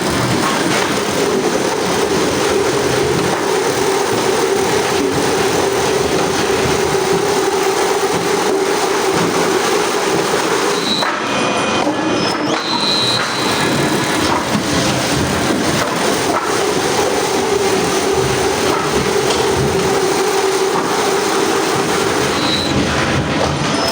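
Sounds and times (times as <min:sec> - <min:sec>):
heavy machinery running: 0:00.0 - 0:23.9
brief high squeals: 0:12.1 - 0:13.7.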